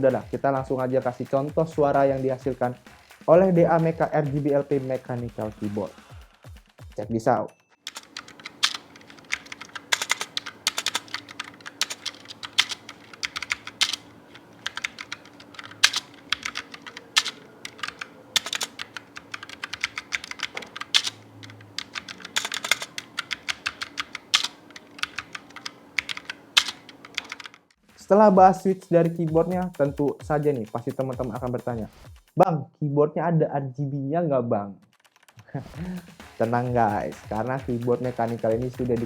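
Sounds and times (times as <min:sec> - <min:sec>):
mechanical keyboard typing: 0:07.9 - 0:27.8, 0:29.2 - 0:31.8, 0:34.8 - 0:39.0.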